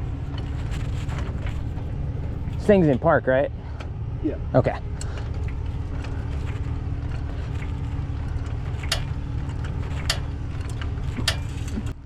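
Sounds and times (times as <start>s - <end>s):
truck engine idling: 0.0s - 12.0s
jack clicking metallically: 4.7s - 12.0s.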